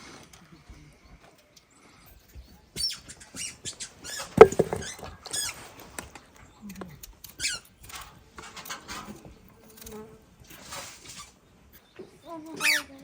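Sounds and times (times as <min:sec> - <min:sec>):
animal chirps and squeaks: 0:01.6 - 0:05.7, 0:06.5 - 0:07.9, 0:11.0 - 0:13.0.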